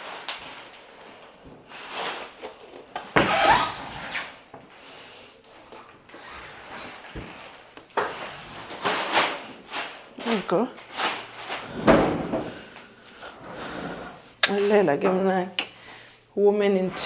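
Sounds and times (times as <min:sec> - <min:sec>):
rubbing and scraping: 0:06.2 - 0:15.0.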